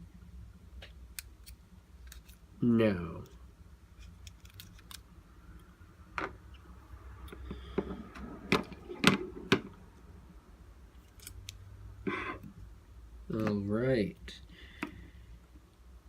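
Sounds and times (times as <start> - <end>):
small parts and tools clicking: 1.1 - 2.5, 4.0 - 5.7, 11.0 - 11.6.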